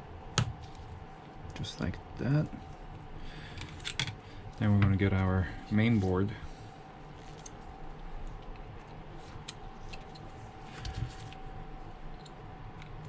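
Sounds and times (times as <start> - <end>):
faint steady hum: 0.0 - 13.0.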